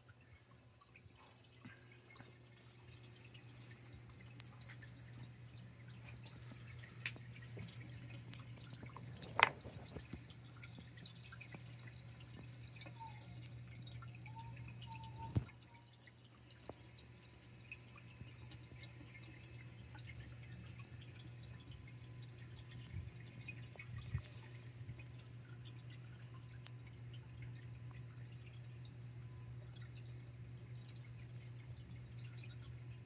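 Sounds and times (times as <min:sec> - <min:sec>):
small waterfall trickling: 0:00.0 - 0:33.0
water drips: 0:00.0 - 0:33.0.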